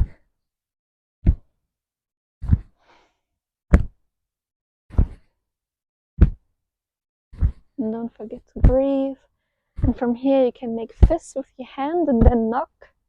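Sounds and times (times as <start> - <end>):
hands patting the body: 3.7 - 3.9, 4.9 - 5.2, 6.2 - 6.4.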